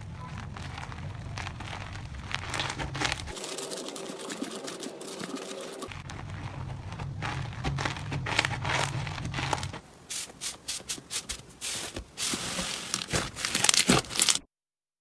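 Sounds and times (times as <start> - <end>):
slime crackling and popping: 11.3 - 14.4.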